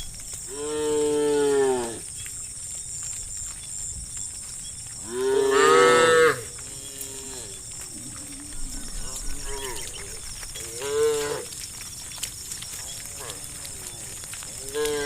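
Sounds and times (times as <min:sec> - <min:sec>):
cow mooing: 0:05.1 - 0:11.6, 0:14.6 - 0:15.0.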